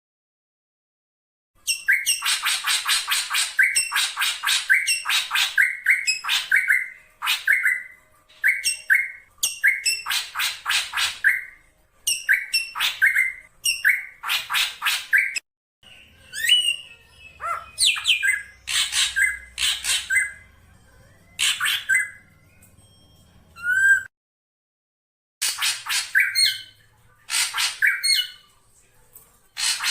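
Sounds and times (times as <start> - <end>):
bird harsh squawking calls: 17.4 - 20.4, 29.6 - 29.9.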